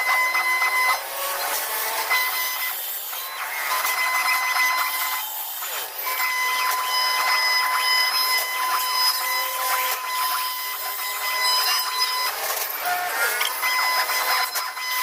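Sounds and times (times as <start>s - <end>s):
wood router whine: 0.0s - 15.0s.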